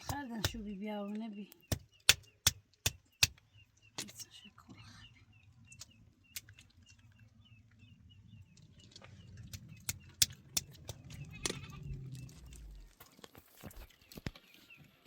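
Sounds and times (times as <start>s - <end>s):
faint bird chirps: 3.0s - 10.2s
low steady rumble: 4.7s - 13.0s
sharp knocks and clicks: 9.4s - 11.7s.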